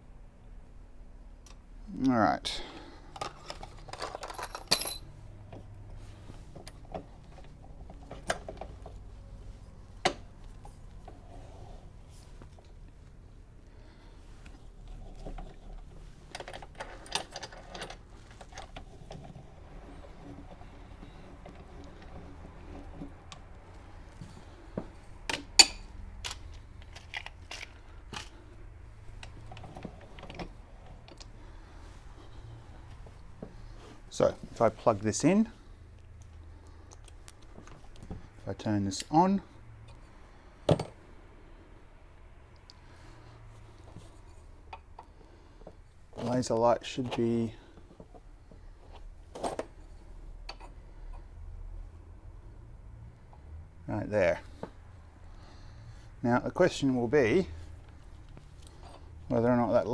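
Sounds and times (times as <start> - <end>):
small metal objects clinking: 3.8 - 5.1.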